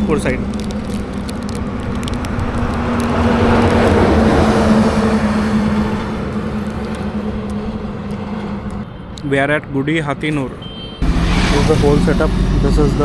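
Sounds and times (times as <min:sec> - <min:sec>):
motorcycle engine cruising: 0:11.0 - 0:13.0.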